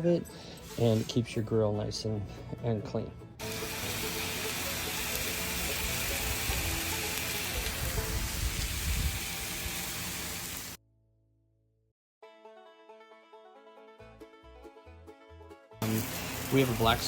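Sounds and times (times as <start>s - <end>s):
faint music: 0.0s - 8.0s
steady loud hiss: 3.4s - 10.8s, 15.8s - 17.0s.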